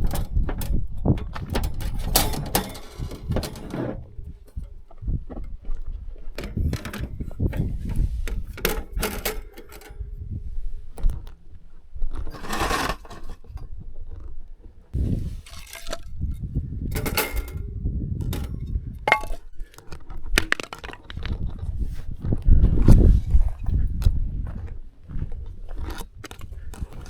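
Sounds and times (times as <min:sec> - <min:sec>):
objects clinking and knocking: 0:00.0 - 0:03.9, 0:16.9 - 0:21.5.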